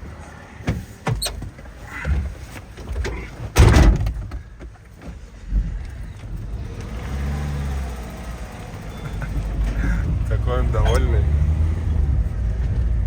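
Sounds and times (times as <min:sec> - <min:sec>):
vehicle door slamming: 0:03.5 - 0:04.3, 0:10.8 - 0:11.3.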